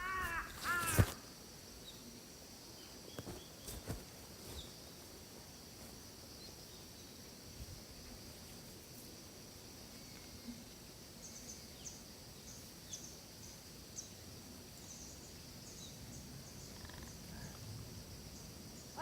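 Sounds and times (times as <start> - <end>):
crow cawing: 0.0 - 1.1
insect hiss: 0.0 - 19.0.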